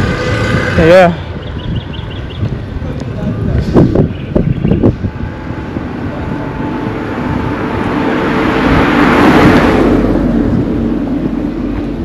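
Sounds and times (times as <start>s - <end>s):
vehicle driving past: 0.0s - 1.6s, 4.8s - 12.0s.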